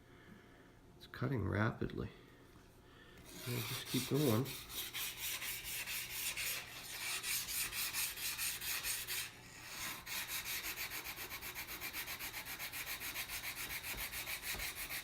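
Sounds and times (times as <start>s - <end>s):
knife sharpening on a whetstone: 3.3s - 15.0s.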